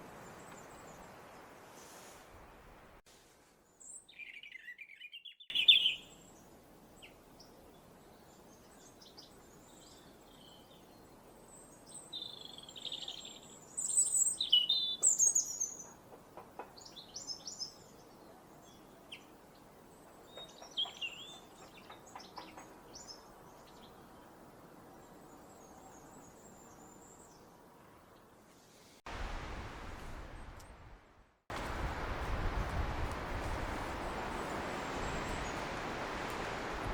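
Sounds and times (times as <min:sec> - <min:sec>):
robin singing: 0:03.8 - 0:06.4, 0:11.8 - 0:15.9.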